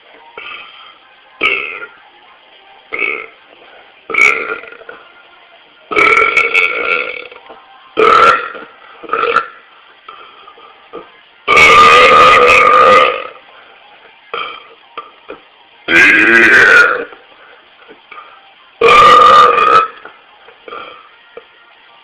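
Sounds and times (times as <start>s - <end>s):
man burping: 1.4s - 1.9s, 4.1s - 4.9s, 5.9s - 7.3s, 8.0s - 9.5s, 11.5s - 13.4s, 15.9s - 17.2s, 18.8s - 20.0s.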